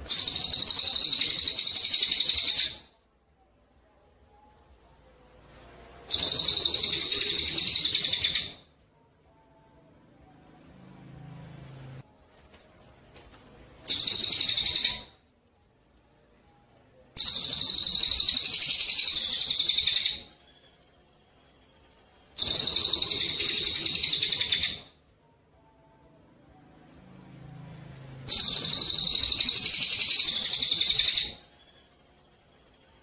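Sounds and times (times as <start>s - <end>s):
songbird trilling: 6.1s - 8.6s.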